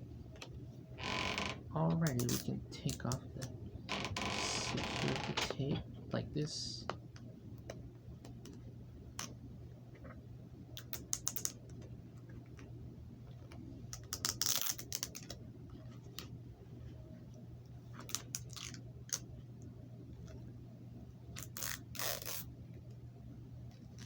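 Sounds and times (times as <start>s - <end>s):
low hum: 0.0s - 10.8s
tape peeling: 13.9s - 15.4s, 18.0s - 19.2s, 21.4s - 22.5s.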